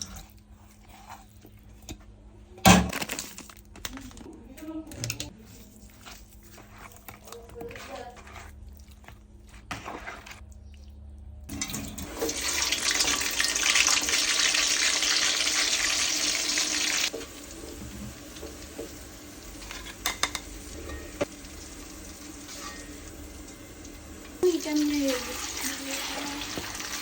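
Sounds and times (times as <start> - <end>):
tap water running into sink: 11.6 - 19.0.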